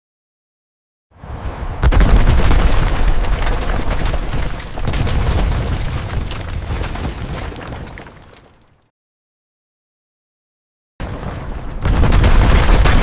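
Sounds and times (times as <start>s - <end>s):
heavy explosion blast: 1.2s - 6.3s, 11.5s - 13.0s
rumble of crashing debris: 1.2s - 8.8s, 11.0s - 13.0s.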